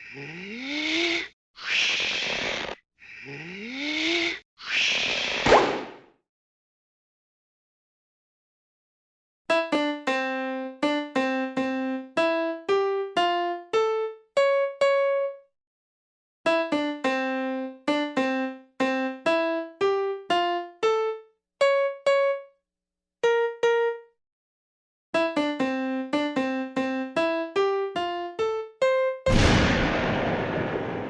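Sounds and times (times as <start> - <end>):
playful electric piano jingle: 9.5 - 15.4, 16.5 - 22.5, 23.2 - 24.1, 25.2 - 29.4.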